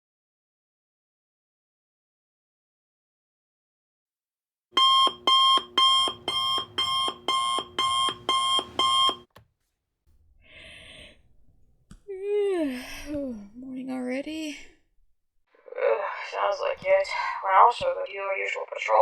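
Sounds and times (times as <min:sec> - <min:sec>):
alarm clock beeping: 0:04.8 - 0:09.3.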